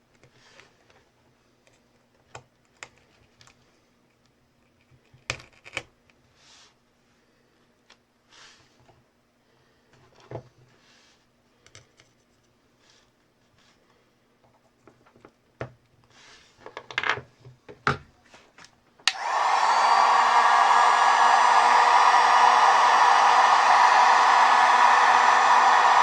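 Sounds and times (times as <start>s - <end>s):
hot-air blower running: 19.1s - 26.0s.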